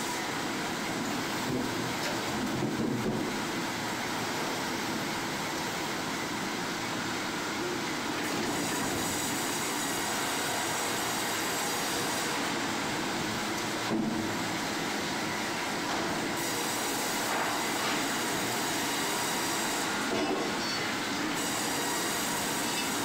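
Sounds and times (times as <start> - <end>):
sawmill machinery clatter: 7.2 - 23.0.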